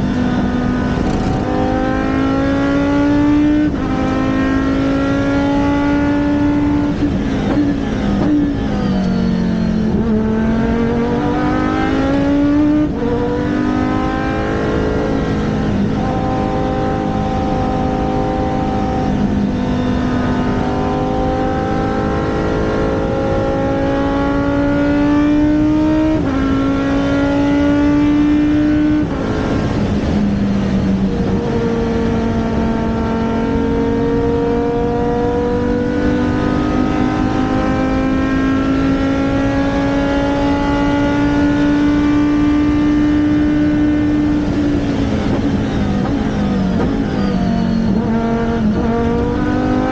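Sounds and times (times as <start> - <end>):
race car engine accelerating: 0.0 - 49.9.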